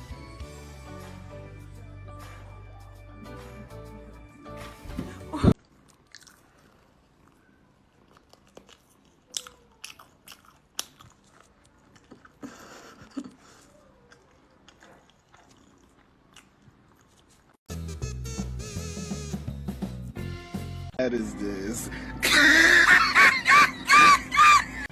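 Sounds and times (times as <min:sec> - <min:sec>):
chewing and crunching: 0:05.6 - 0:17.6.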